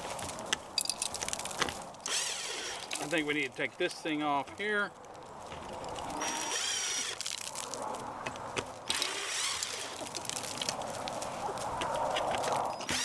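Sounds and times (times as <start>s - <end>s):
cordless drill running: 2.1s - 3.0s, 6.2s - 7.2s, 8.9s - 10.0s
chickens calling: 8.1s - 13.0s.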